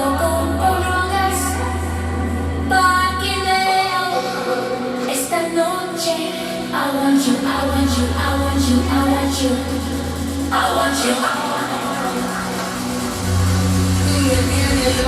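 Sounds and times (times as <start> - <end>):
pop song with vocals over loudspeakers: 0.0 - 15.0
heavy bass line: 7.5 - 15.0.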